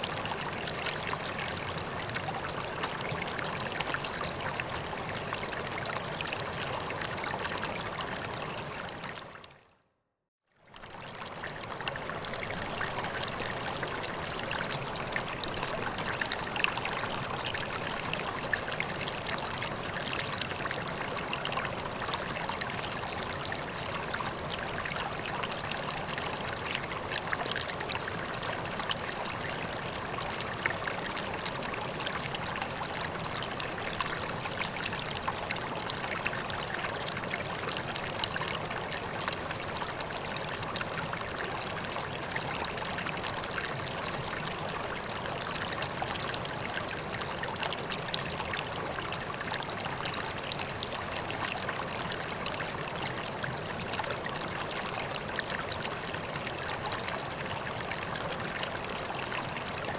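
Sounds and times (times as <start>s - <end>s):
pond water trickling and splashing: 0.0s - 9.7s, 10.5s - 59.9s.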